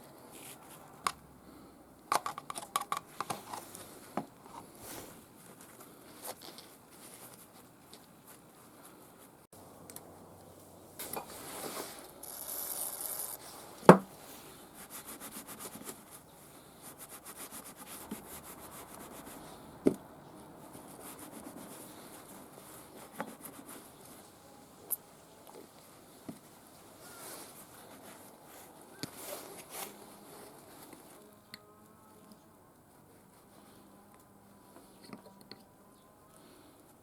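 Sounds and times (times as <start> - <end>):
sharp knock: 13.9 - 14.1.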